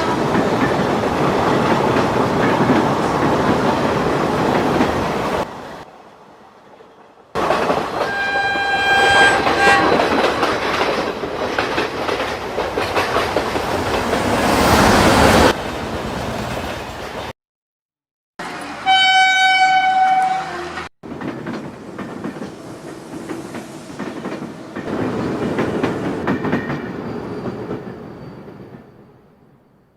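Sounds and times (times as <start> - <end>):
train rumble and wheel clatter: 0.0 - 17.3, 19.9 - 29.9
train horn blasts: 8.0 - 10.1, 18.6 - 20.9.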